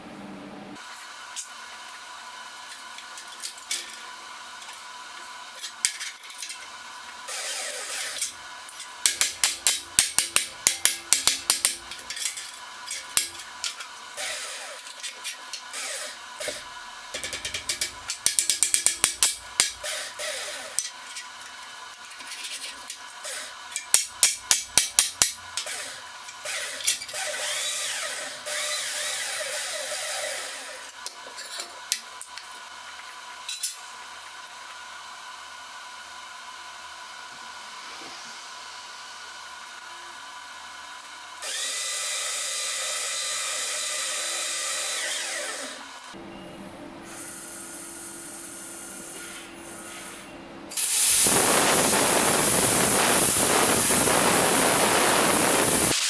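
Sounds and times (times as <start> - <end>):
plasma cutter crackling: 7.3 - 27.6, 50.7 - 56.0
steady hissing: 50.8 - 56.0.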